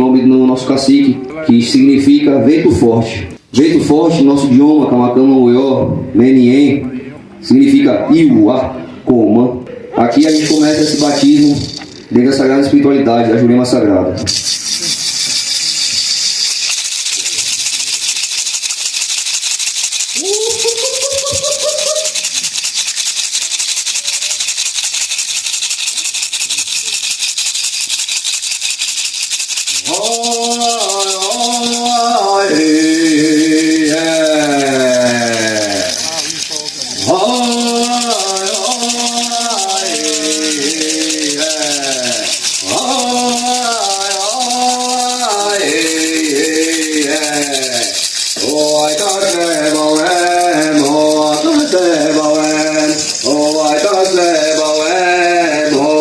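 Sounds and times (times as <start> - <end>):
gourd rattle shaken: 10.0 - 12.8, 14.2 - 56.0
person chanting a melody: 20.2 - 22.2, 29.8 - 36.4, 37.0 - 56.0.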